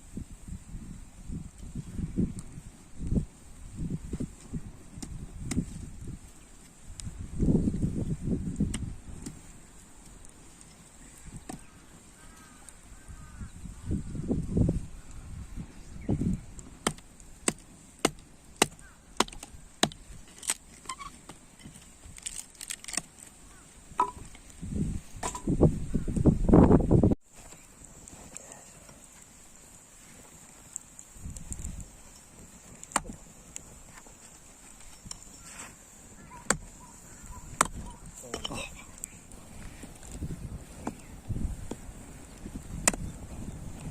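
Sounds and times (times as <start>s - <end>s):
hatchet chopping wood: 16.8s - 20.6s, 36.5s - 36.7s, 37.5s - 37.8s.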